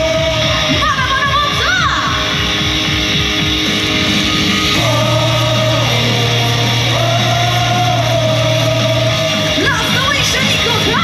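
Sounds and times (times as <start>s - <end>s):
fast steady drumming: 0.0s - 11.0s
pop-rock music with electric guitar: 0.0s - 11.0s.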